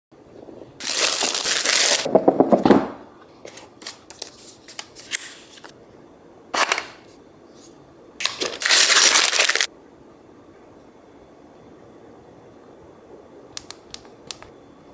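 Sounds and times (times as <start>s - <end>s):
packaging rustling and tearing: 0.8s - 2.1s, 6.6s - 7.1s, 8.2s - 9.7s.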